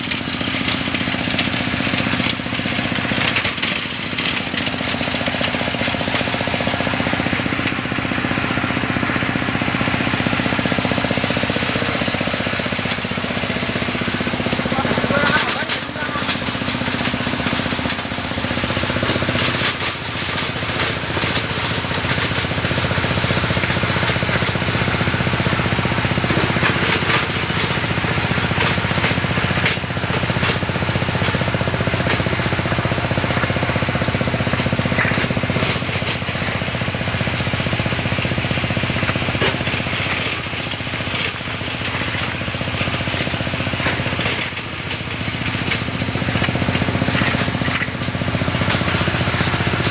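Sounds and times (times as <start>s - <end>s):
motor hum: 0.0s - 49.9s
stone crushing clatter and hiss: 38.0s - 49.9s.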